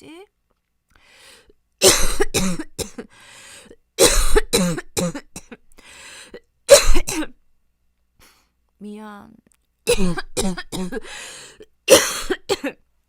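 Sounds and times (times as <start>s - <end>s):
woman drawing breath: 0.9s - 1.6s, 3.1s - 3.8s, 5.8s - 6.4s, 11.0s - 11.7s
woman coughing harshly: 1.8s - 3.1s, 4.0s - 5.6s, 6.7s - 7.4s, 9.9s - 11.2s, 11.9s - 12.8s.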